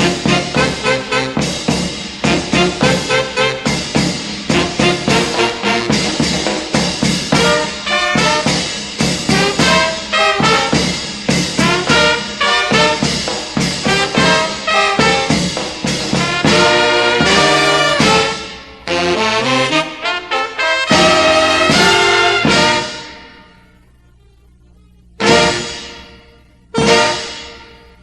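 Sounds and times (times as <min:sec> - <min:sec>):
brass band playing: 0:00.0 - 0:23.4, 0:25.2 - 0:28.0.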